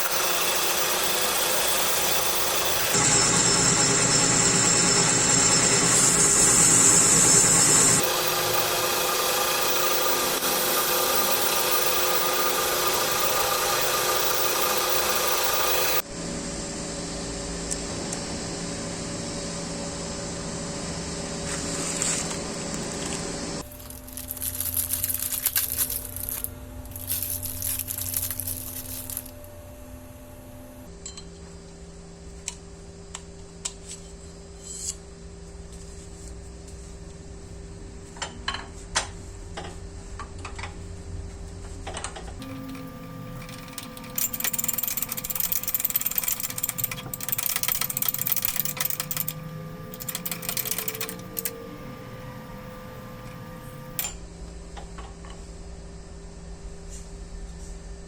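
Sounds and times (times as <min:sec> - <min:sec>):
power tool running: 0:00.0 - 0:16.0, 0:21.6 - 0:30.9, 0:42.4 - 0:54.2
scraping and rubbing: 0:23.6 - 0:29.4.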